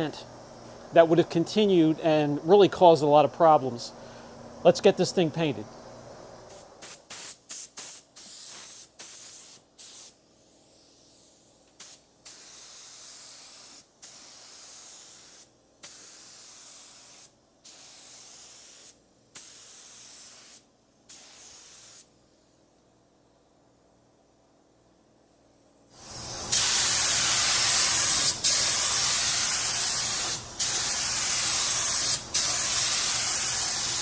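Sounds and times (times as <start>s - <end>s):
paint spray gun hissing: 6.5s - 22.5s, 25.9s - 34.0s.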